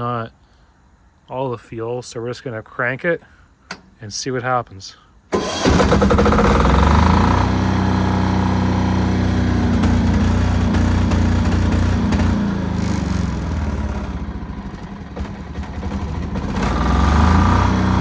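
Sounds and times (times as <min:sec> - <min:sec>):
diesel engine starting and running: 0:03.7 - 0:04.0, 0:05.3 - 0:18.0.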